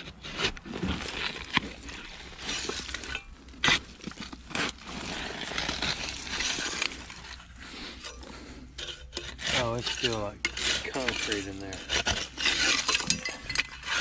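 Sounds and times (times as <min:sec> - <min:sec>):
scraping and raking dirt: 0:00.0 - 0:14.0
glass shards clinking: 0:09.7 - 0:14.0.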